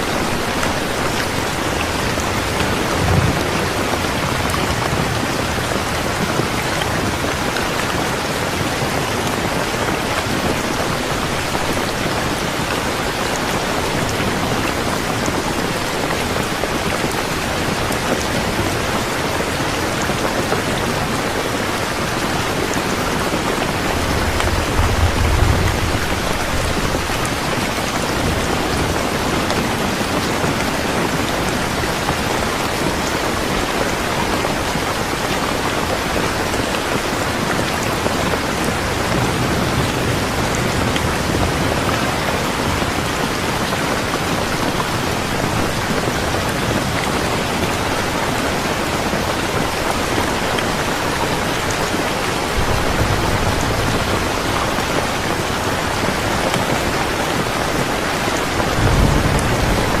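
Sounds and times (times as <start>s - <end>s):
heavy rain: 0.0s - 60.0s
distant thunder rumbling: 0.2s - 7.4s, 22.6s - 30.3s, 52.4s - 60.0s.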